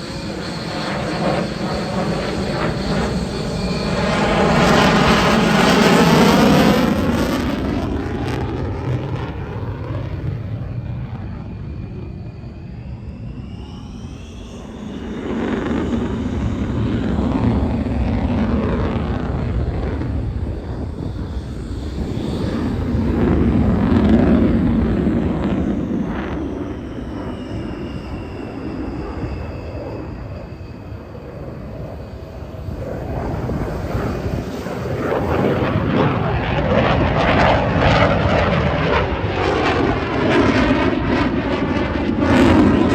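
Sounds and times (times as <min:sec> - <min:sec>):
aircraft flying overhead: 0:00.0 - 0:42.9
whistling tones: 0:11.4 - 0:15.5, 0:25.6 - 0:32.4.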